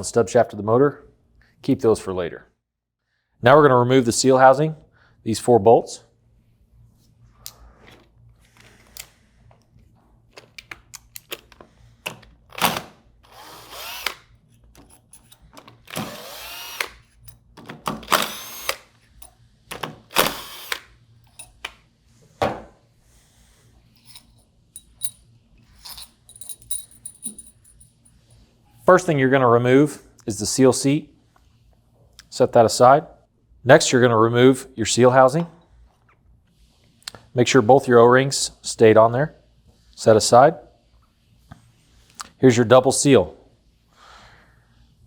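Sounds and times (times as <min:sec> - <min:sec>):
power driver spinning: 0:12.6 - 0:17.0, 0:18.0 - 0:18.9, 0:20.1 - 0:21.6
light metal clinks: 0:24.0 - 0:28.2.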